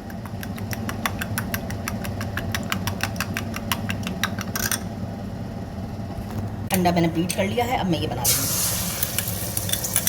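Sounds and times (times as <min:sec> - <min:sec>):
utensil clicking against bowl: 0:00.0 - 0:04.8
steady low hum: 0:00.0 - 0:10.0.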